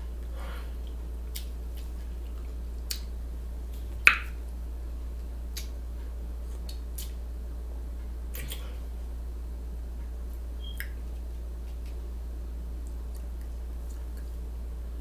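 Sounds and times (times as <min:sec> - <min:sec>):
steady low hum: 0:00.0 - 0:15.0
wet mouth clicks and smacks: 0:01.3 - 0:03.1, 0:03.8 - 0:04.4, 0:05.5 - 0:05.8, 0:06.5 - 0:07.2, 0:08.3 - 0:08.7, 0:10.6 - 0:11.0, 0:12.8 - 0:14.4.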